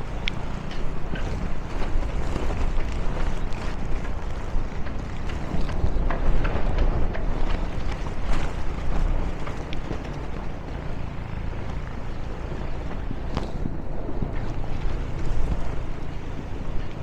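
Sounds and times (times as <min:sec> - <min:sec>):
light ticks: 0:00.0 - 0:17.0
wind buffeting microphone: 0:00.0 - 0:17.0.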